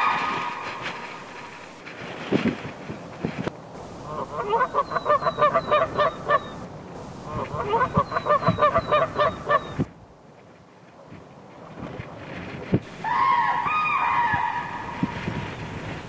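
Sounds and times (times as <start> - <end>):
geese honking: 0.0 - 1.8, 3.9 - 9.9, 12.9 - 16.0.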